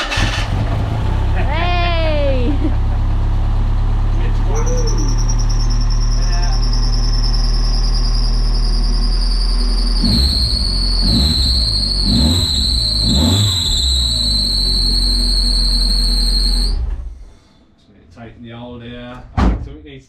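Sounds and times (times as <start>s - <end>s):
car engine revving: 0.0s - 1.5s, 2.6s - 17.4s
squealing fan belt: 4.4s - 17.5s.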